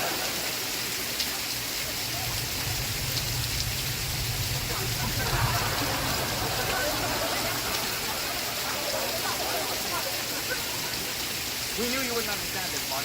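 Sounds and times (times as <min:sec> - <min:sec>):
steady rain: 0:00.0 - 0:13.0.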